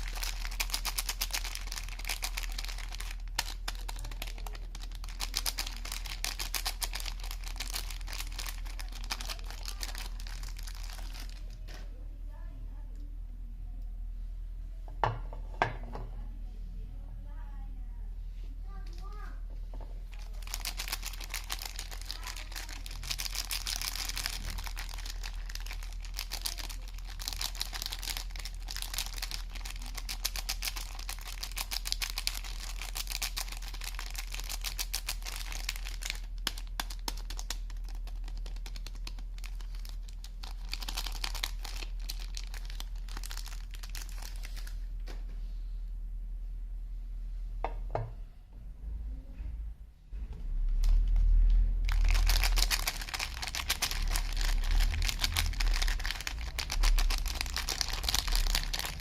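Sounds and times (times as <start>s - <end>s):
wrapper crinkling and tearing: 0.0s - 11.6s, 20.1s - 44.9s, 50.8s - 59.0s.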